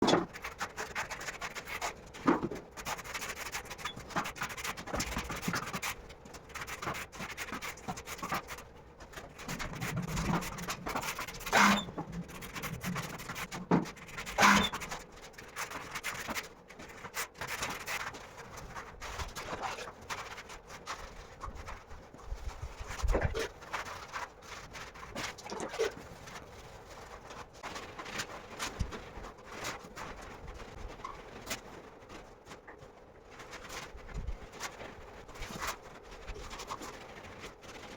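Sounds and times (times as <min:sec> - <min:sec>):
tool scraping grout into tiles: 0:09.9 - 0:11.9, 0:12.7 - 0:14.9.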